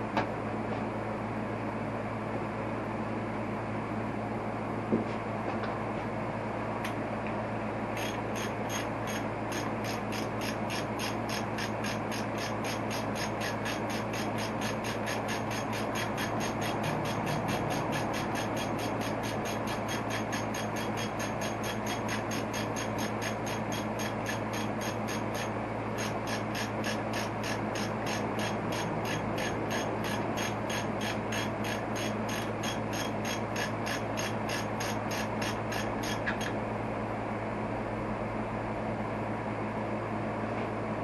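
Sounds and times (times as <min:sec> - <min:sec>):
rapid ratchet clicking: 0:08.0 - 0:36.6.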